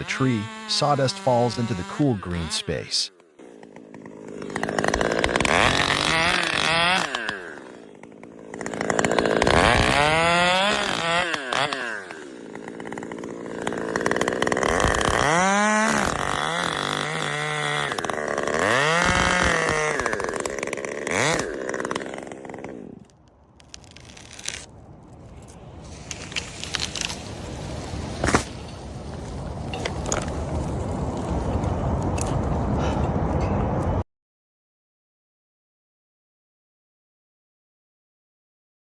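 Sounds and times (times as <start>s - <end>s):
chainsaw revving while cutting: 0.0s - 23.2s.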